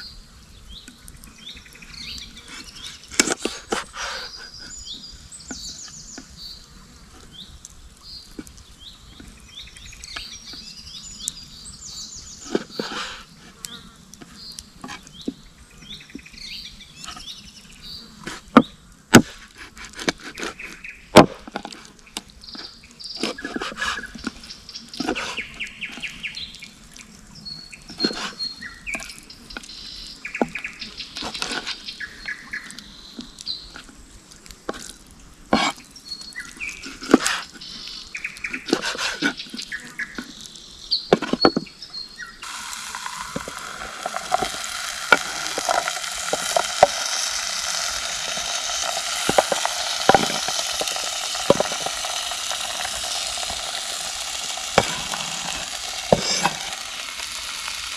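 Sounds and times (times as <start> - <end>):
food sizzling in a pan: 0.0 - 19.4, 42.4 - 57.9
small clicks: 42.4 - 57.9.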